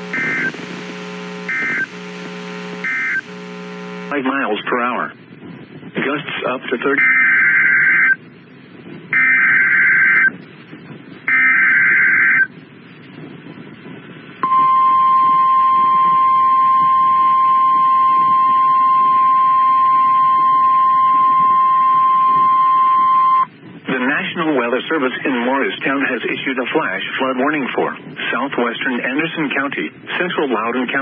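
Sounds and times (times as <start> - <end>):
digital data bursts: 0.0 - 4.1
harsh digital screech: 0.0 - 4.1
steady attention tone: 0.0 - 4.1, 11.3 - 12.5.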